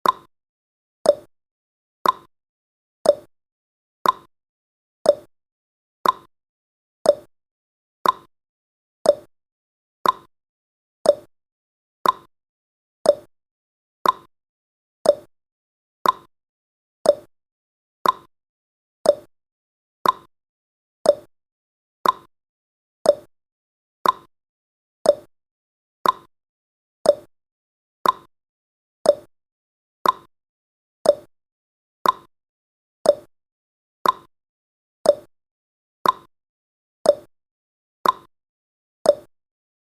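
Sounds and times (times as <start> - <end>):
timer ticking: 0.0 - 0.3, 1.1 - 1.3, 2.0 - 2.3, 3.0 - 3.3, 4.0 - 4.3, 5.1 - 5.3, 6.0 - 6.3, 7.0 - 7.3, 8.0 - 8.3, 9.0 - 9.3, 10.0 - 10.3, 11.0 - 11.3, 12.0 - 12.3, 13.0 - 13.3, 14.0 - 14.3, 15.0 - 15.3, 16.0 - 16.3, 17.0 - 17.3, 18.0 - 18.3, 19.0 - 19.3, 20.0 - 20.3, 21.0 - 21.3, 22.0 - 22.3, 23.0 - 23.3, 24.0 - 24.3, 25.0 - 25.3, 26.0 - 26.3, 27.0 - 27.3, 28.0 - 28.3, 29.0 - 29.3, 30.0 - 30.3, 31.0 - 31.3, 32.0 - 32.3, 33.0 - 33.3, 34.0 - 34.3, 35.0 - 35.3, 36.0 - 36.3, 37.1 - 37.3, 38.0 - 38.3, 39.1 - 39.3.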